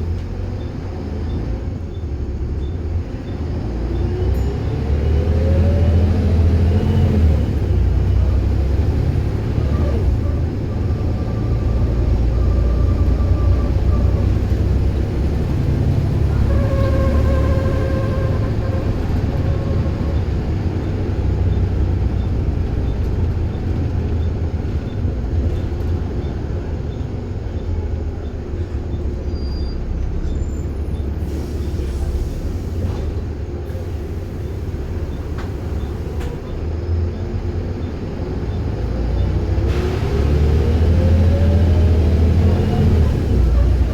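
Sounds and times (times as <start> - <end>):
bus engine droning: 0.0 - 43.9
whining tone: 6.8 - 21.6.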